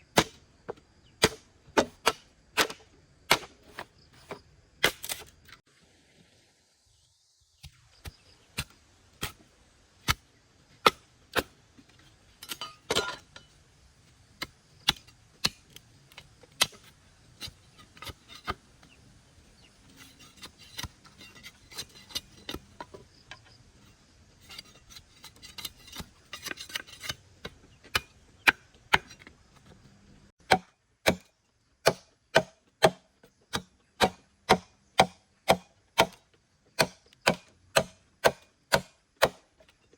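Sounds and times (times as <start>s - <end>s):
blade chopping bamboo: 0.1s - 5.4s, 10.8s - 11.6s, 25.4s - 29.2s, 30.4s - 36.2s, 36.8s - 39.6s.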